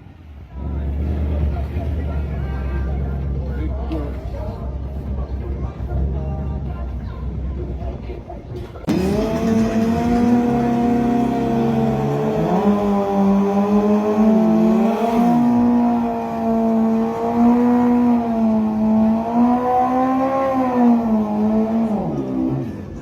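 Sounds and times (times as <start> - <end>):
race car engines revving: 0.0 - 23.0.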